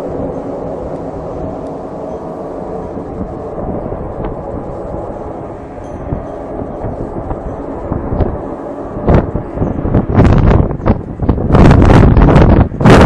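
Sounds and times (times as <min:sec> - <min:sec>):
low rumbling drone with hum: 0:00.0 - 0:13.0.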